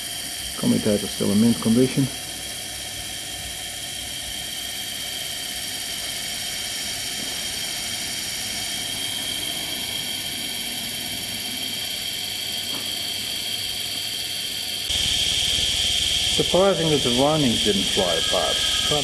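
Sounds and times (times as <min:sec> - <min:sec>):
motor high-pitched whine: 0:00.0 - 0:19.0.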